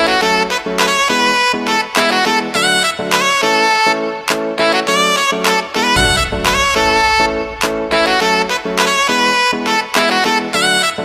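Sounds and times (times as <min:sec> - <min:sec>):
saxophone-like melody: 0:00.0 - 0:09.6.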